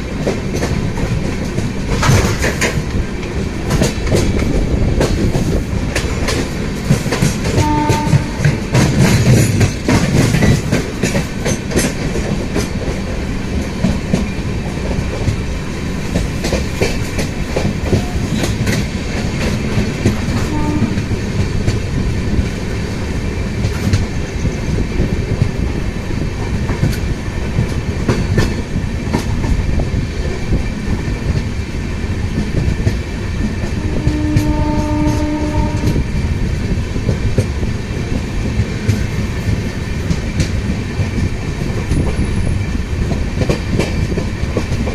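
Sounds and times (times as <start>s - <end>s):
clickety-clack over rail joints: 0.0s - 44.9s
train wheels rumbling on rails: 0.0s - 44.9s
train horn: 7.5s - 8.6s, 20.3s - 21.2s, 33.8s - 36.1s.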